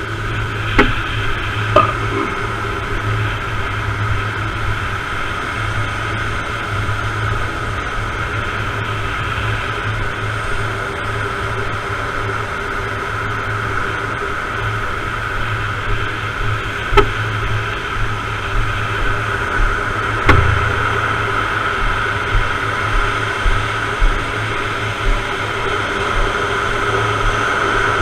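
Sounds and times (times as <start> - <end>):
muffled rush of water and wind: 0.0 - 28.0
sharp knocks on board: 0.8 - 1.0.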